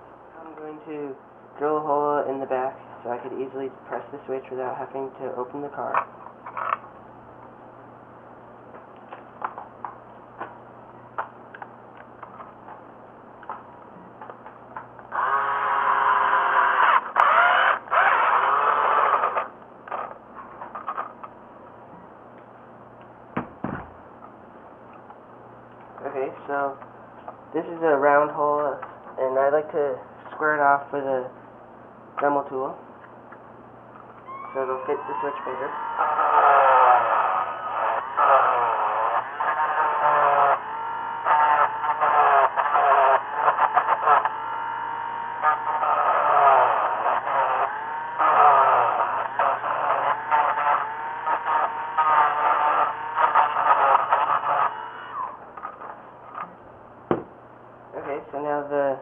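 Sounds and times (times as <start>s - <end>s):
electric drill boring: 15.1s - 20.1s, 34.3s - 55.4s
rotary tool grinding: 15.1s - 21.2s, 34.6s - 55.9s.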